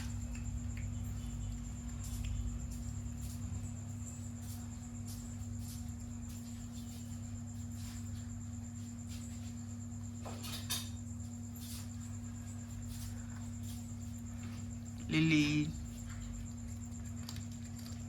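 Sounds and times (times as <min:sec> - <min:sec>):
low electrical hum: 0:00.0 - 0:18.0
cat chewing: 0:16.0 - 0:18.0.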